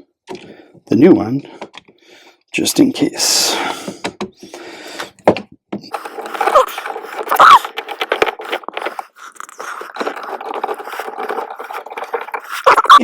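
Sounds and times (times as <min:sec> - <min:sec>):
plastic faceplate scraping: 0:03.6 - 0:13.0.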